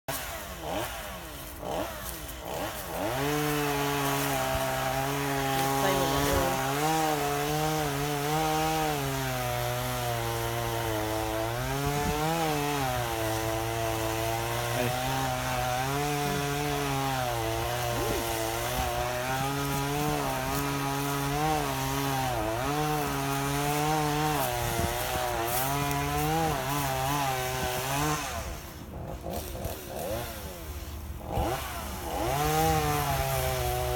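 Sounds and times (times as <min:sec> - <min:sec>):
chainsaw cutting wood: 0:00.1 - 0:33.9.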